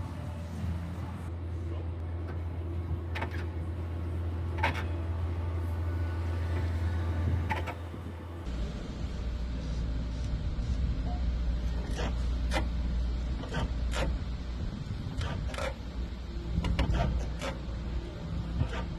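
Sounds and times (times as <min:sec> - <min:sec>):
brakes and suspension creaking: 0:00.0 - 0:08.5
car low rumble: 0:00.0 - 0:18.9.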